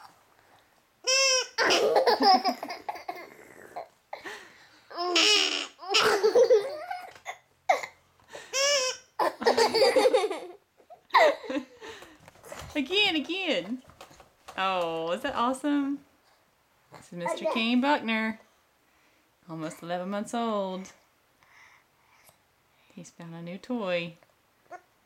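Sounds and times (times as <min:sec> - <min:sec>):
baby giggling and squealing: 0:01.1 - 0:03.9, 0:04.9 - 0:07.9, 0:08.5 - 0:11.5.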